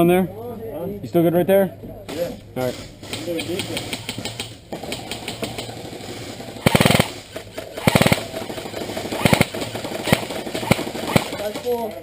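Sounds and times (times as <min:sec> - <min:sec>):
airsoft gun full-auto bursts: 0:03.6 - 0:11.7
faint scattered gunshots: 0:06.5 - 0:11.7.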